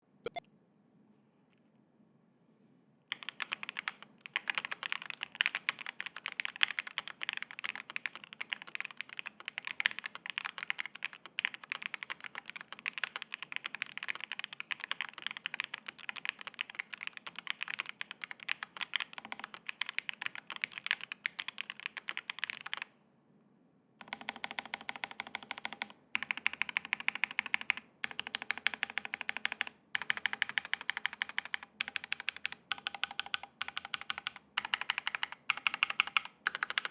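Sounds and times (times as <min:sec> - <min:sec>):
fast mechanical keyboard typing: 0:03.1 - 0:22.9, 0:24.0 - 0:36.9.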